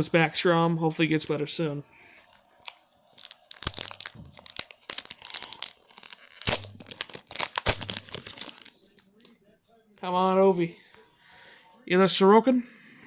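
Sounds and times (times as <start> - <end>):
card wrapper crackling: 2.2 - 9.0.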